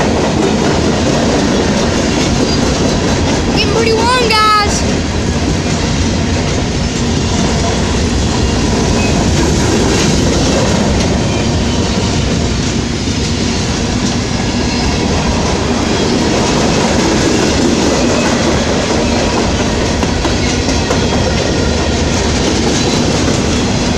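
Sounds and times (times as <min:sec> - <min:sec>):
train wheels rumbling on rails: 0:00.0 - 0:23.9.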